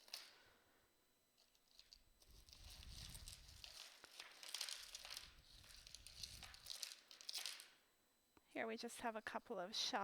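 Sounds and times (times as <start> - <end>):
wrapping crinkling and rustling: 0.0 - 0.5, 1.4 - 7.9.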